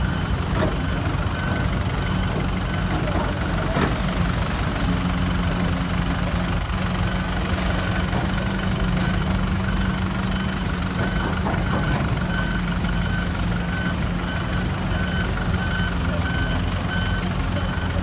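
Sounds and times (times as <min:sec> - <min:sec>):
diesel machinery humming: 0:00.0 - 0:18.0
faint repeating beep: 0:07.0 - 0:18.0.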